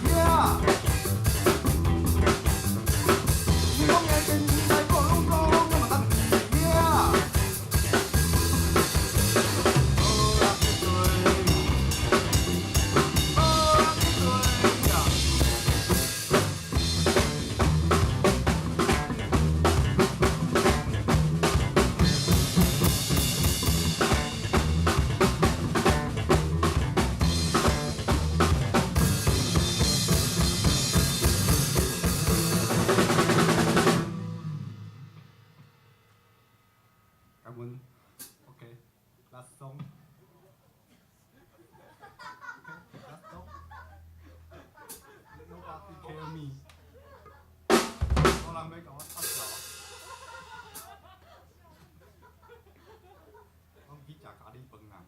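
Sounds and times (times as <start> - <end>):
live band playing drum-heavy song: 0.0 - 36.4, 47.7 - 51.0.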